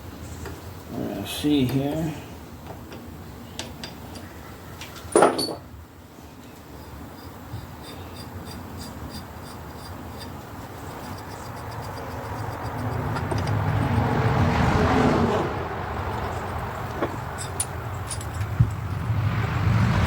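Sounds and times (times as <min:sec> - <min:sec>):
motor vehicle passing: 0:09.7 - 0:20.0.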